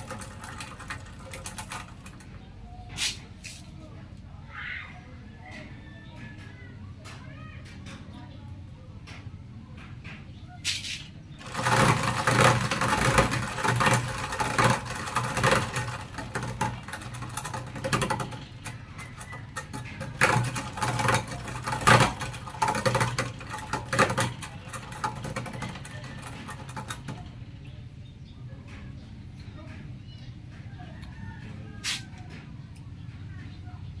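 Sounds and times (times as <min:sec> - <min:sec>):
irregular clicks and knocks: 0:00.0 - 0:02.5, 0:11.4 - 0:27.6.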